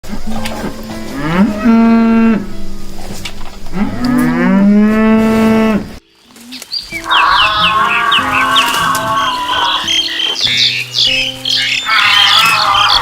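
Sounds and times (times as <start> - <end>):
cow mooing: 1.1 - 2.6, 3.6 - 6.0, 7.1 - 10.3.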